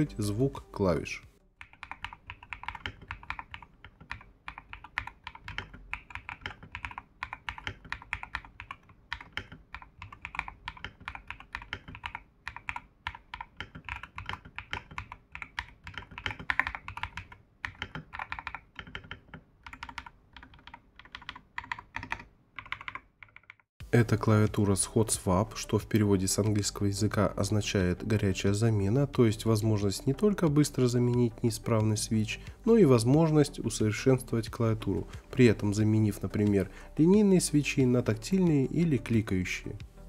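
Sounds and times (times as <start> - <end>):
mechanical keyboard typing: 1.6 - 23.7.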